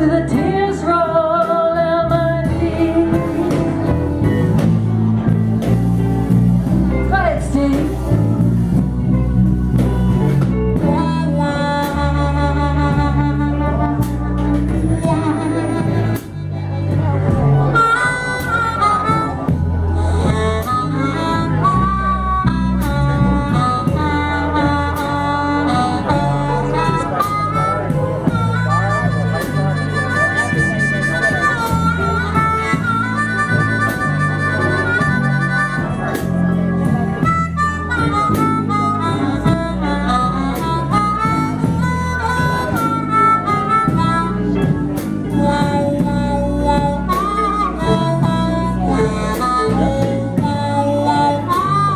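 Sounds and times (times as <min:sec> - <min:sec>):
live blues band: 0:00.0 - 0:51.9
harmonica wailing: 0:10.8 - 0:51.9.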